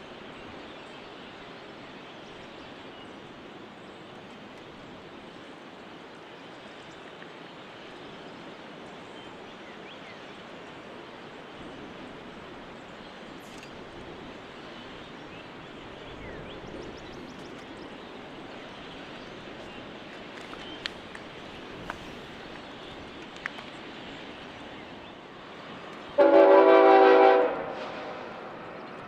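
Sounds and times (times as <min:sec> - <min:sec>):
freight train wheels on rail: 0:10.4 - 0:29.0.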